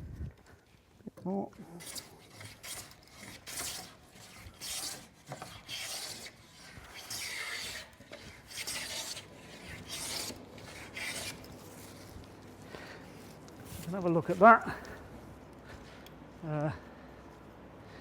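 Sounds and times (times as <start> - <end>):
hand plane rasping strokes: 1.8 - 12.1.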